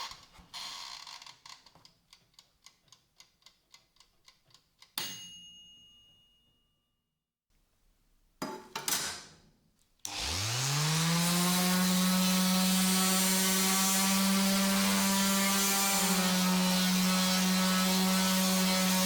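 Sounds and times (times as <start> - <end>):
power tool motor humming: 10.1 - 19.0.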